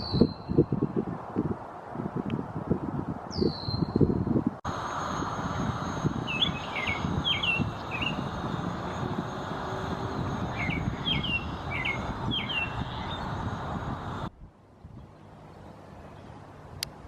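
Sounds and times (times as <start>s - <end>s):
low background rumble: 4.6s - 14.6s
songbird chirping: 6.0s - 13.6s.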